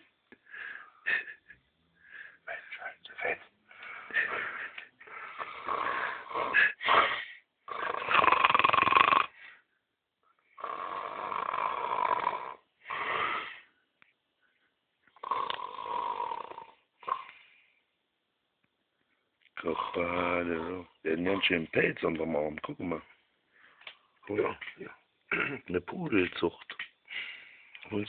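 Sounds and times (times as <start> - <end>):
man snoring: 5.0 - 9.4, 10.6 - 13.5, 15.2 - 17.3, 19.6 - 21.5.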